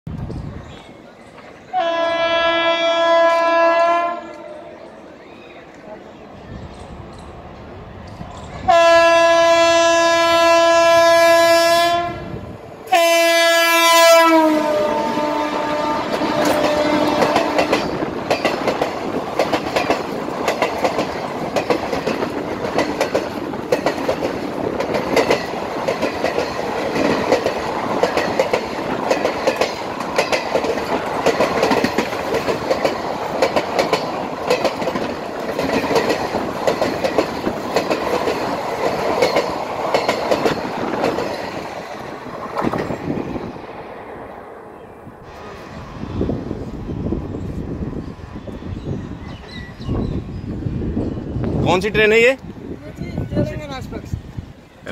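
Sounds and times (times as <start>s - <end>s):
train horn blasts: 1.7s - 4.8s, 8.6s - 17.9s
train wheels clacking over rail joints: 15.7s - 43.2s.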